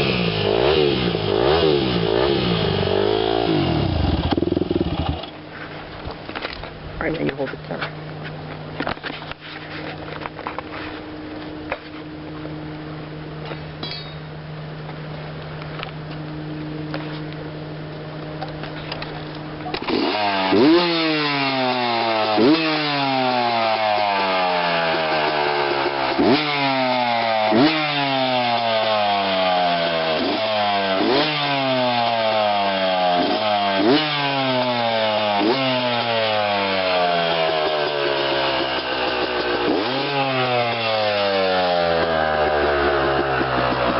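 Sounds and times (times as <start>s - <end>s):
engine revving: 0.0s - 5.4s, 19.7s - 43.9s
dirt bike engine idling: 0.0s - 6.9s, 24.1s - 26.7s, 36.8s - 43.9s.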